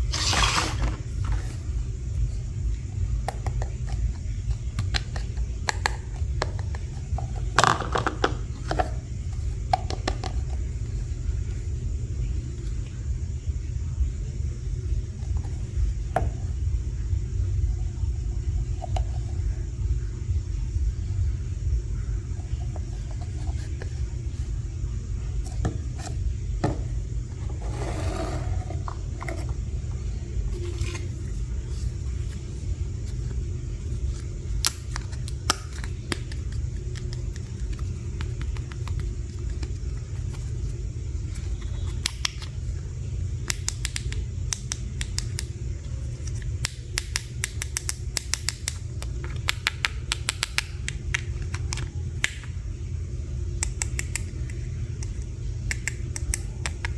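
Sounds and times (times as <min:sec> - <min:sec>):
steady low rumble: 0:10.4 - 0:41.6.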